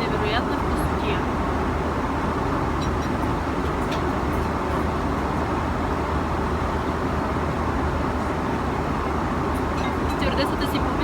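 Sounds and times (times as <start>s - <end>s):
airliner cabin noise: 0.0s - 11.0s.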